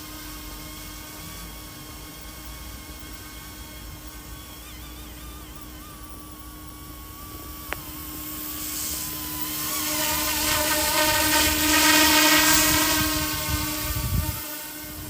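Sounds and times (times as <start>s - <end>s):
toy helicopter rotor whine: 0.0s - 15.0s
wind rumble on microphone: 10.5s - 15.0s.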